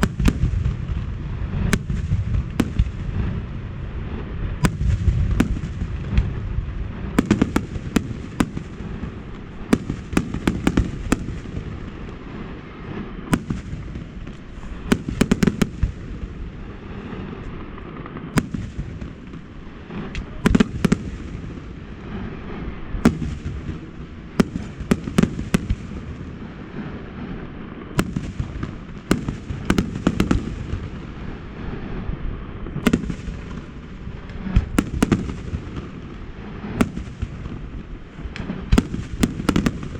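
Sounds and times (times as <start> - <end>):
firework bangs: 0.0 - 39.9.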